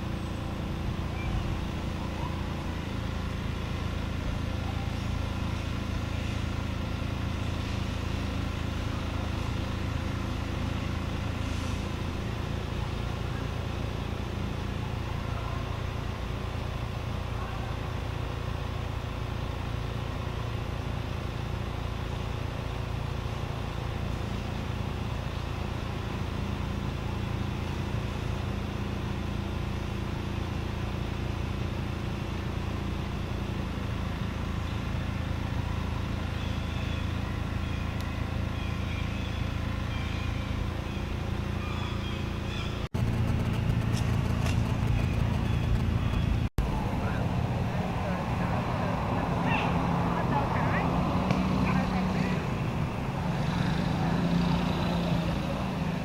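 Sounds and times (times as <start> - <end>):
motor hum: 37.0 - 47.8.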